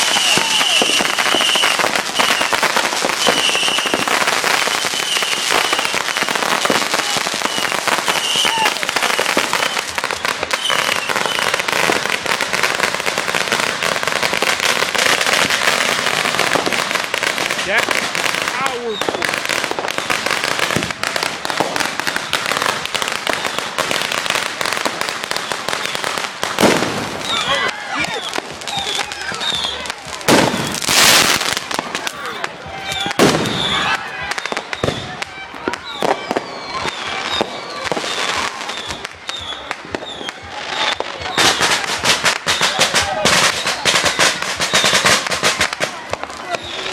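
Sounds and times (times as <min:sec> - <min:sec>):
fireworks crackling and popping: 0:00.0 - 0:46.9
high whistling tone: 0:07.3 - 0:11.6.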